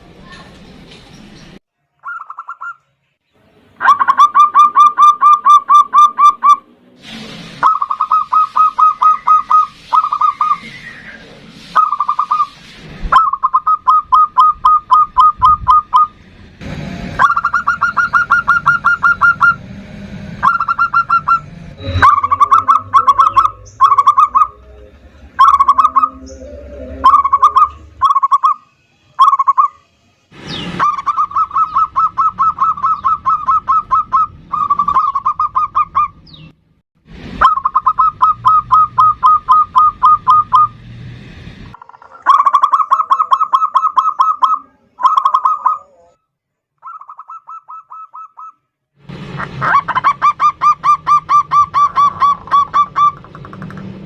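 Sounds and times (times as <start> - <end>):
dove cooing: 20.4 - 28.6, 30.8 - 36.1, 50.0 - 53.8.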